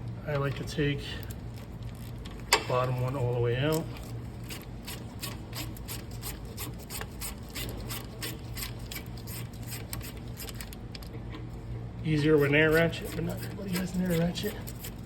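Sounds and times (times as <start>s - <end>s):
steady low hum: 0.0s - 15.0s
hand ratchet clicking rapidly: 4.4s - 10.6s.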